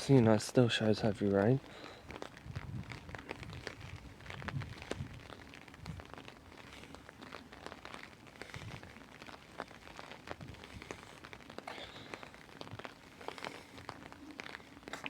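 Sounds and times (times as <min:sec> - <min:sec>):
heavy rain hiss: 0:00.0 - 0:15.0
raindrops tapping: 0:00.0 - 0:15.0.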